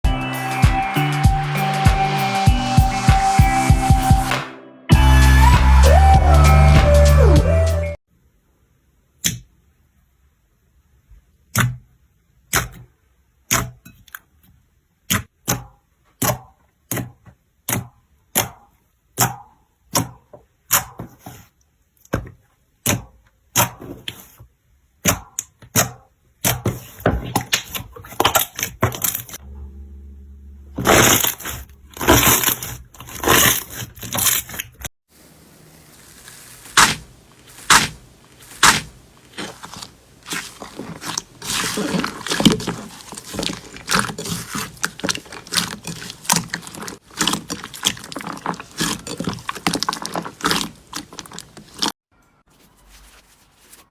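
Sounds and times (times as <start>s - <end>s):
slime crackling pops: 35.6s - 51.9s.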